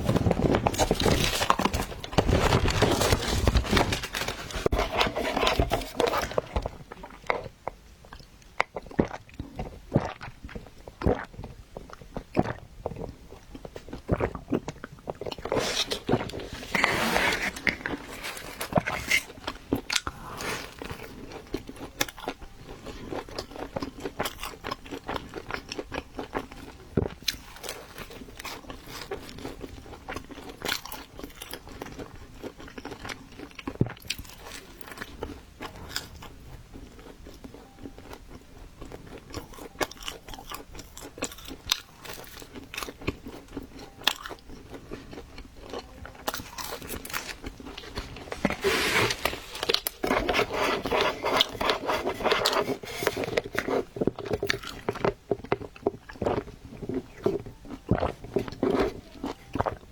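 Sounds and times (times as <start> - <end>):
chewing and crunching pizza: 0.0 - 59.9.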